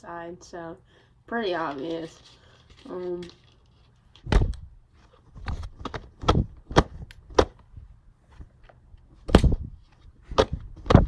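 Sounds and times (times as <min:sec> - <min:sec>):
dull thumps: 0:04.2 - 0:04.7, 0:05.3 - 0:07.6, 0:09.2 - 0:11.0.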